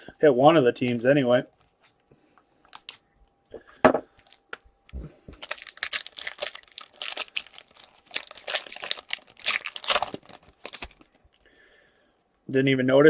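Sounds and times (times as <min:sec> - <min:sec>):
foil wrapper crinkling and tearing: 0:05.4 - 0:11.4.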